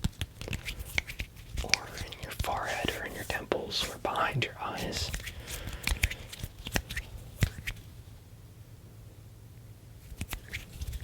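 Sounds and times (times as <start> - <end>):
fingers clicking and brushing skin: 0.0 - 7.9, 10.1 - 11.0.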